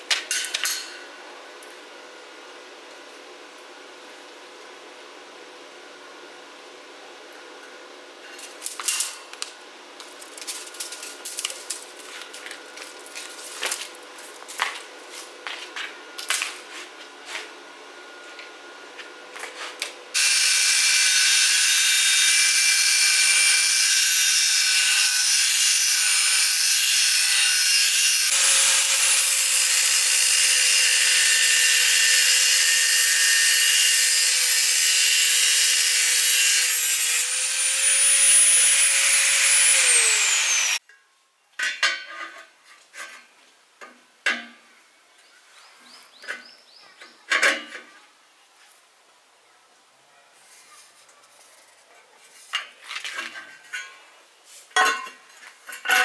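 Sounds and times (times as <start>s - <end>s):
metal parts clinking: 10.1s - 12.1s
power tool grinding metal: 20.2s - 40.8s.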